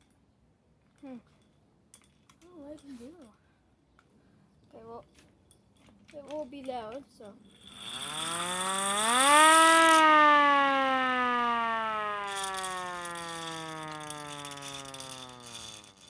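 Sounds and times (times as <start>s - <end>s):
mechanical cranking rattle: 7.5s - 16.0s
hand-crank siren wailing: 7.6s - 16.0s.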